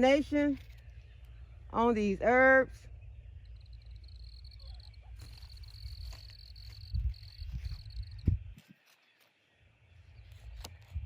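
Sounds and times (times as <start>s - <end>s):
cricket trilling: 0.0s - 8.6s
wind on microphone: 5.1s - 8.8s.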